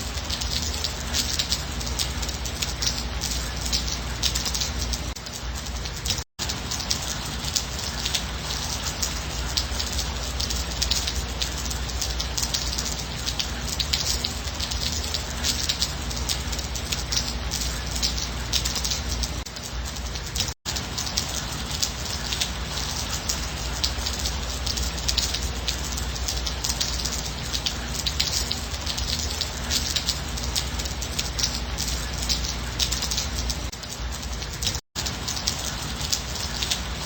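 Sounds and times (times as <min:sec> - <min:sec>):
rain falling: 0:00.0 - 0:37.0.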